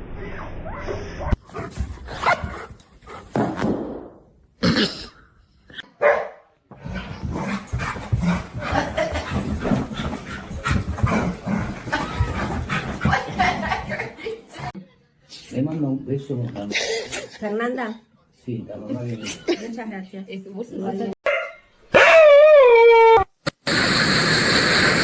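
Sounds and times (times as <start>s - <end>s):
dog barking: 6.0s - 6.5s, 21.2s - 22.3s.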